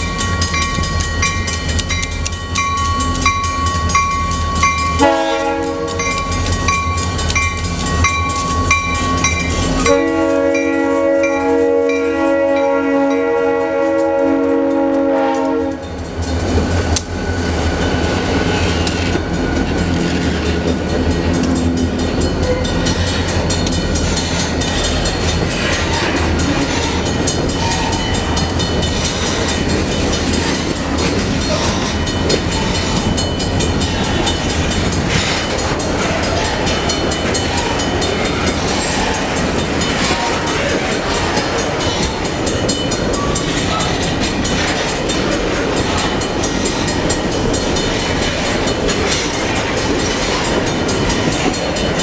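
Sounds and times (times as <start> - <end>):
wheels clattering on rails: 0.0 - 12.5, 13.7 - 52.0
train engine rumble: 0.0 - 52.0
locomotive air horn: 5.0 - 6.0, 9.8 - 15.9.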